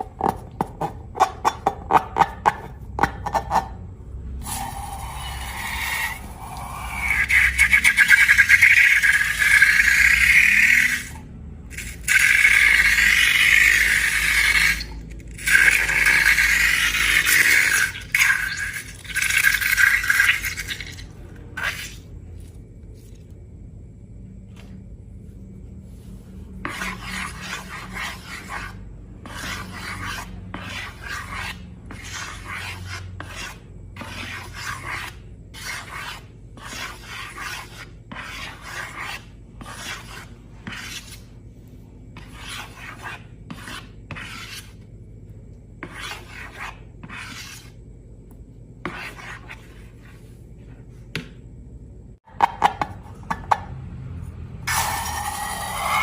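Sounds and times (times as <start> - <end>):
rasping slime strokes: 25.9 - 41.4, 42.2 - 44.8.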